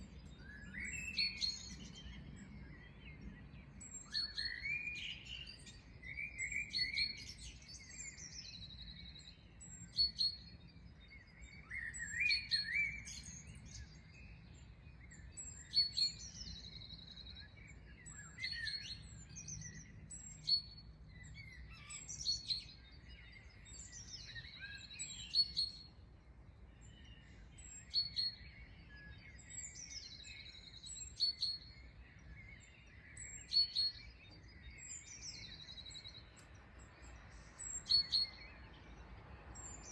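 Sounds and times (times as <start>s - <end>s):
lower bird chirps and warbles: 0.0s - 39.9s
songbird chirps and falling trill: 26.6s - 39.9s.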